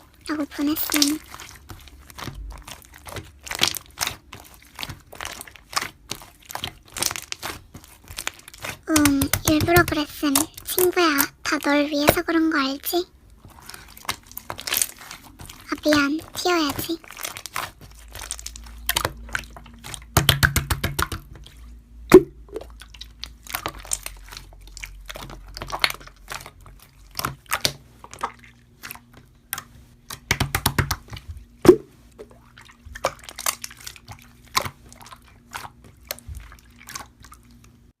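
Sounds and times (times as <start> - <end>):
slime squishing and popping: 0.2 - 37.9.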